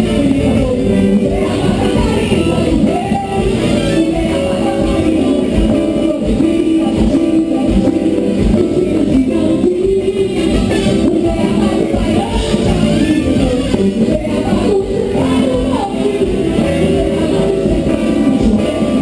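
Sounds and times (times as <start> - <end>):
carnival band playing: 0.0 - 19.0
singing: 0.0 - 19.0
steady drum beat: 0.0 - 19.0.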